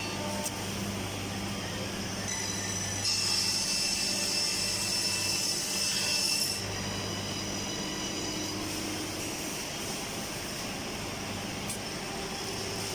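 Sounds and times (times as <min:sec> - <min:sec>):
high-pitched cutting whine: 0:00.0 - 0:05.2, 0:05.8 - 0:12.9.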